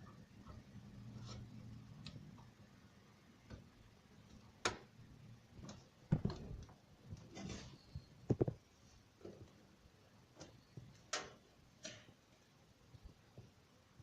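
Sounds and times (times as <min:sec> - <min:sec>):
clicks and knocks in computer case: 0:05.6 - 0:07.7.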